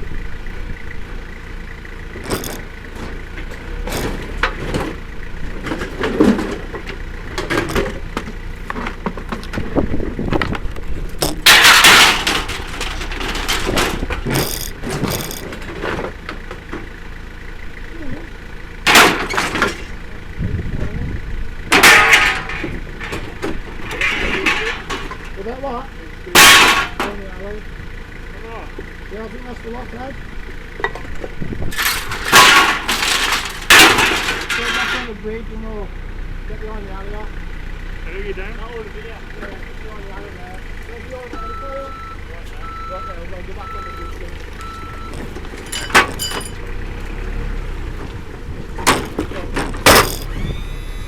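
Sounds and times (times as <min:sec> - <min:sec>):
scrap metal clattering: 0:02.1 - 0:16.9, 0:18.9 - 0:20.0, 0:21.7 - 0:25.4, 0:26.4 - 0:27.2, 0:30.9 - 0:35.2, 0:44.6 - 0:50.3.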